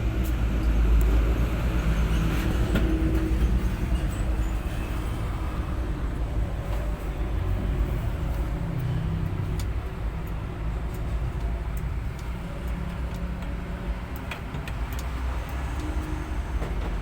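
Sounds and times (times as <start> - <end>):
diesel truck engine rumbling: 0.0 - 17.0
faint engine ticks: 6.2 - 17.0.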